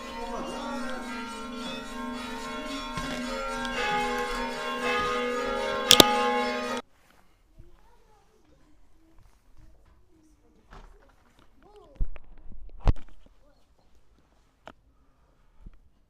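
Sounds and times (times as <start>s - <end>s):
church bells ringing: 0.0s - 6.8s.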